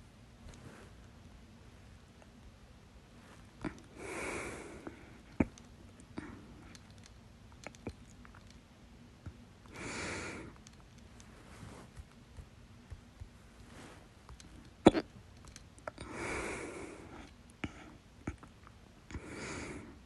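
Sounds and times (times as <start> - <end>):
person breathing: 3.3 - 6.8, 9.7 - 10.6, 15.9 - 18.0, 19.1 - 20.0.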